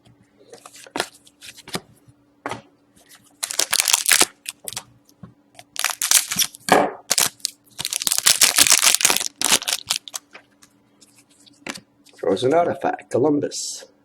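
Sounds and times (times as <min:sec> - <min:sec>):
trading cards rustling and scraping: 0:00.5 - 0:02.0, 0:03.0 - 0:04.8, 0:05.6 - 0:12.2.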